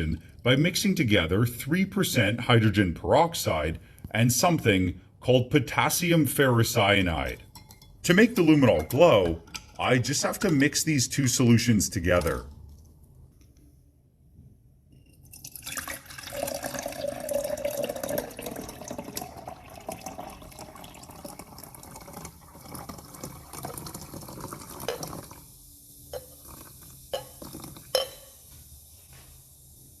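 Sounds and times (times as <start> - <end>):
liquid pouring and splashing: 15.2 - 28.5.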